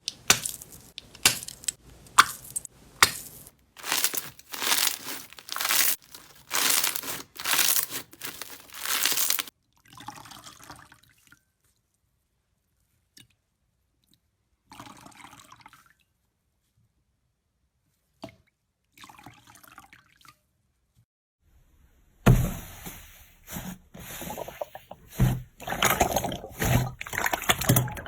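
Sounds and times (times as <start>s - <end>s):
slime squishing by hand: 0.0s - 9.5s.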